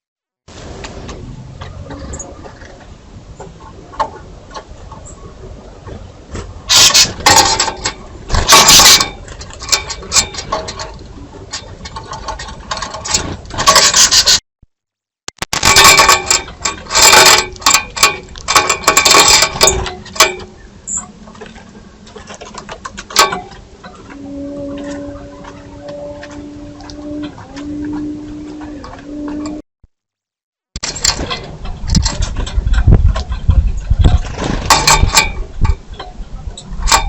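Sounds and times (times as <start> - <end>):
birds scraping on bird feeder: 6.7 - 11.0, 11.9 - 14.4.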